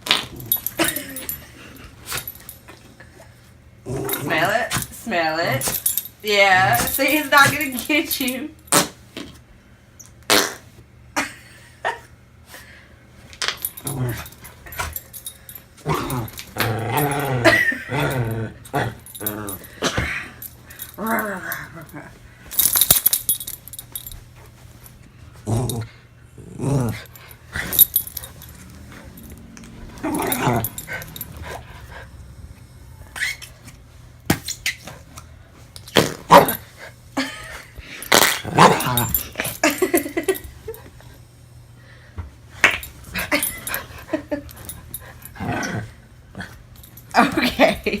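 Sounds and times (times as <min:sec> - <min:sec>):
dog growling and barking: 0:03.8 - 0:07.6, 0:13.6 - 0:22.7, 0:25.4 - 0:32.1, 0:36.0 - 0:36.8, 0:38.0 - 0:40.4, 0:42.6 - 0:47.5.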